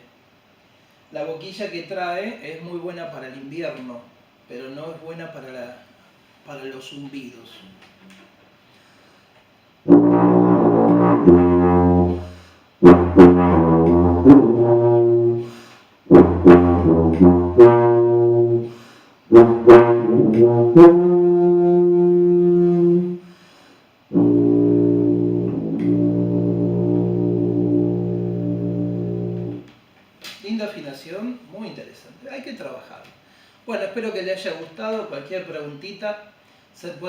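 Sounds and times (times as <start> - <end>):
tuba playing low notes: 9.9 - 23.2, 24.1 - 29.7.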